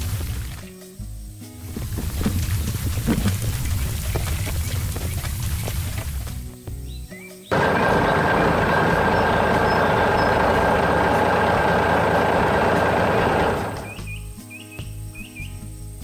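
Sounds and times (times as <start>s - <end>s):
heavy truck engine running: 7.5s - 14.1s.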